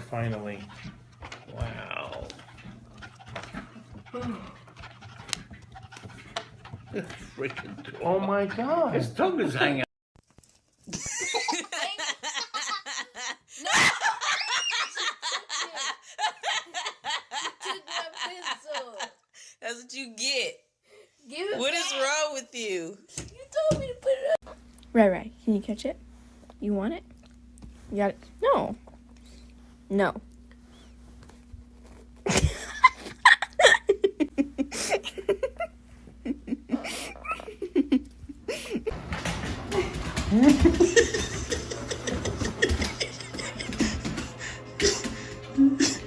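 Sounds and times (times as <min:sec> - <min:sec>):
person laughing hard: 0:10.9 - 0:18.9, 0:32.3 - 0:38.9, 0:40.4 - 0:46.0.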